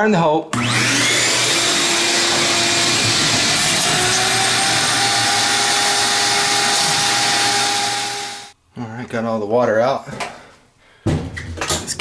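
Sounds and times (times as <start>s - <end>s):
shop vac running: 0.5s - 8.6s.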